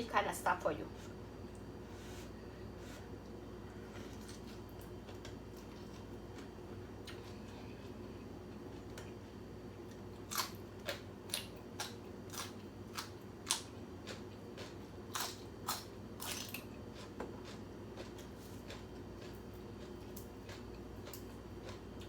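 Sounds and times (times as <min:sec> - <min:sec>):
faint steady hum: 0:00.0 - 0:22.0
crisp crunches of chewing: 0:09.9 - 0:22.0.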